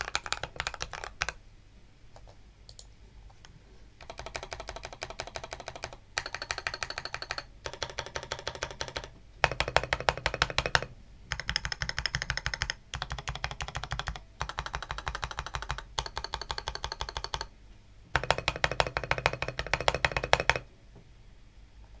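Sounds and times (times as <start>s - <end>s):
typing on mechanical keyboard: 0.0s - 1.4s, 4.0s - 17.5s, 18.2s - 20.7s.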